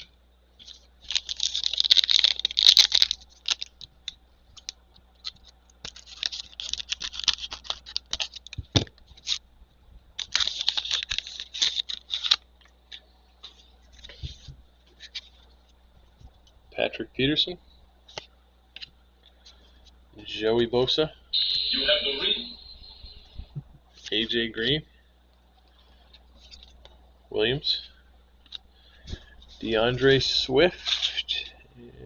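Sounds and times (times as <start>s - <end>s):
card packaging crinkling: 0.6s - 9.4s, 10.2s - 15.4s.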